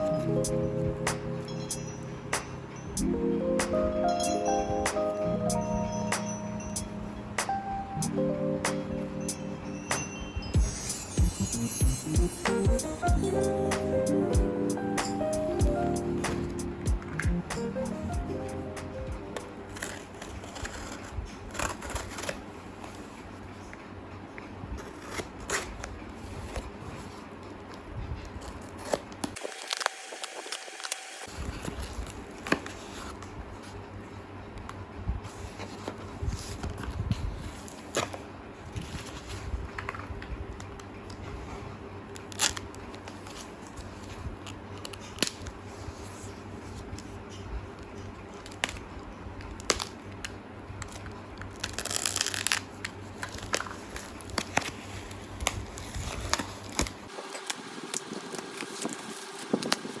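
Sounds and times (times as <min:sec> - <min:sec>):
steady low hum: 0:00.0 - 0:21.4
rustling tear: 0:50.9 - 1:00.0.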